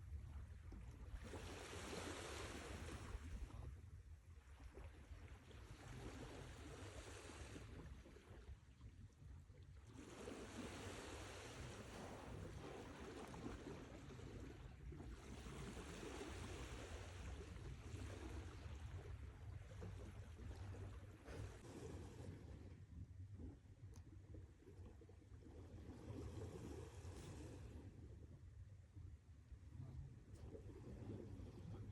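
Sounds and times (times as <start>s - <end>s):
sea waves washing ashore: 1.2s - 3.3s, 10.0s - 14.0s.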